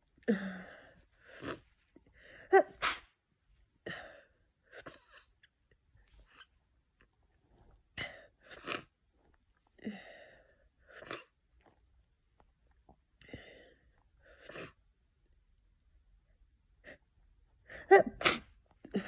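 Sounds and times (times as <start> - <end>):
person sniffing and sneezing: 2.6 - 3.2, 17.9 - 18.7.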